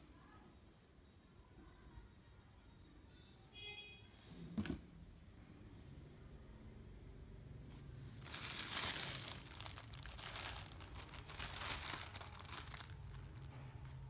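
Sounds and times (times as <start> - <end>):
material crinkling and crackling: 8.2 - 14.0.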